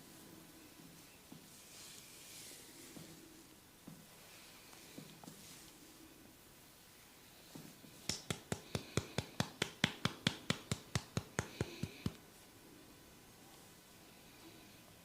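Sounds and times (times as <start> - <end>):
hands tapping on head: 8.0 - 12.2.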